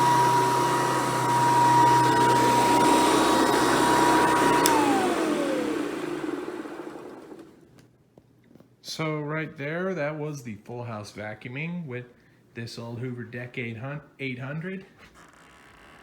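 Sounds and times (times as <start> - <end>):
vacuum cleaner whine: 0.0 - 7.6
switch click: 4.5 - 5.0.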